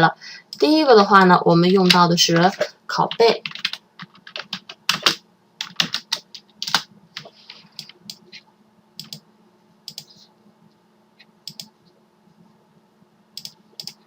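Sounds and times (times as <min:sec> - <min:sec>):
keyboard typing: 0:00.5 - 0:08.3, 0:09.0 - 0:09.2, 0:09.9 - 0:10.2, 0:11.4 - 0:11.7, 0:13.4 - 0:14.0.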